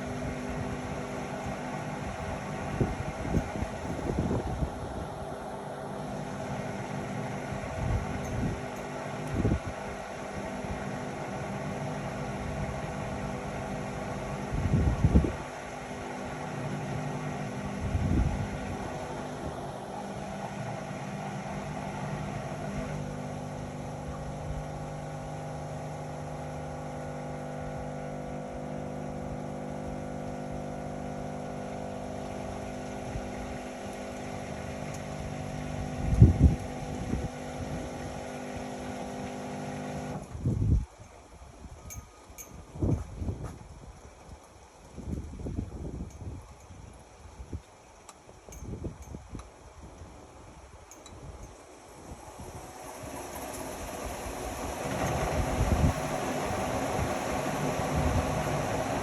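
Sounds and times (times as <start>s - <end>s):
washing machine motor and drum hum: 0.0s - 59.0s
washing machine low thumps: 52.6s - 59.0s.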